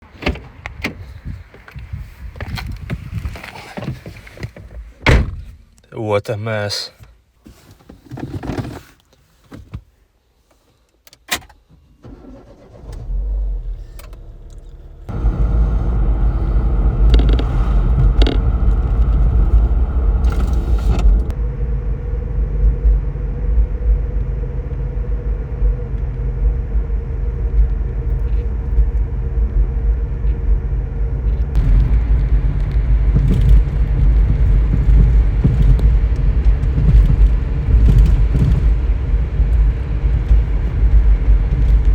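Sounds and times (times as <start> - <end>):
car engine starting: 11.8 - 41.9
car engine rumbling: 12.0 - 41.9.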